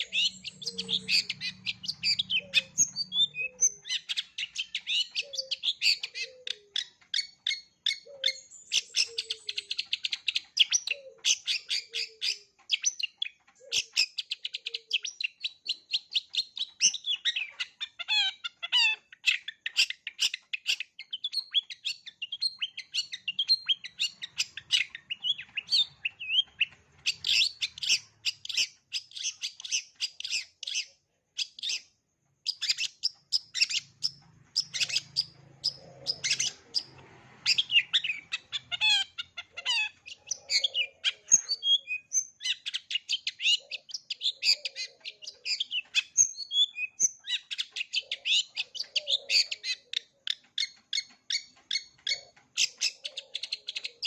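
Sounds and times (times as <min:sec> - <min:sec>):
bird singing rapid chirps and trills: 0:00.0 - 0:54.0.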